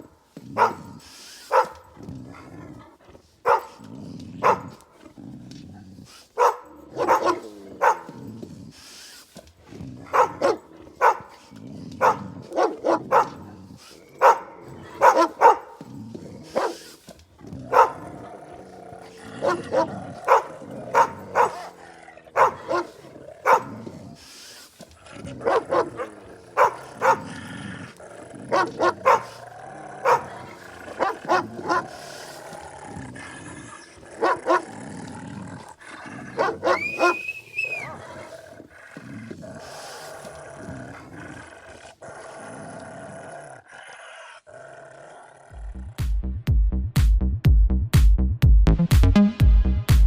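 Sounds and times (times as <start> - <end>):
dog barking aggressively: 0.0 - 2.5, 3.4 - 4.9, 6.3 - 8.3, 10.0 - 17.0, 17.6 - 18.3, 19.0 - 24.3, 25.2 - 27.6, 28.4 - 32.5, 34.1 - 34.8, 36.2 - 38.2
dog growling: 0.0 - 45.7.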